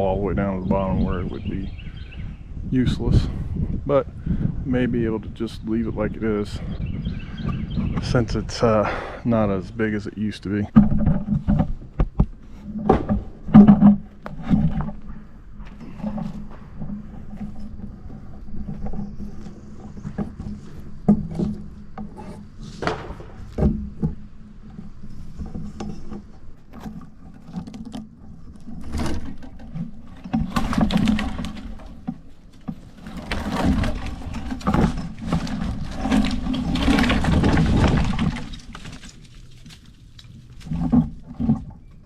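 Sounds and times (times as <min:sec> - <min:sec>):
knocks and scrapes: 0:00.0 - 0:42.0
rustling: 0:09.3 - 0:42.0.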